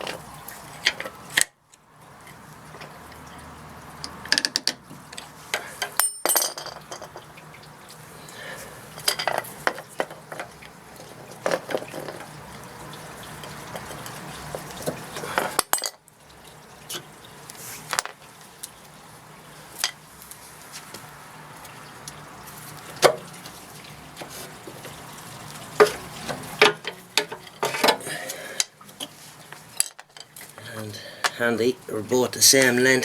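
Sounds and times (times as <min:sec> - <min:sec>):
metal tools clinking and clanking: 0:05.6 - 0:07.3, 0:09.0 - 0:10.5, 0:11.4 - 0:12.3, 0:15.2 - 0:16.0, 0:17.9 - 0:18.2, 0:26.6 - 0:28.0, 0:29.8 - 0:30.5.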